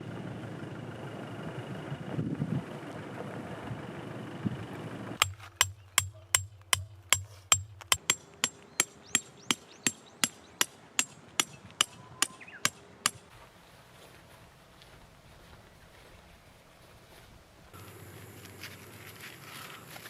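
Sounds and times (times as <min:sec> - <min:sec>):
wind: 0:00.0 - 0:20.0
hammer strikes: 0:05.2 - 0:13.3.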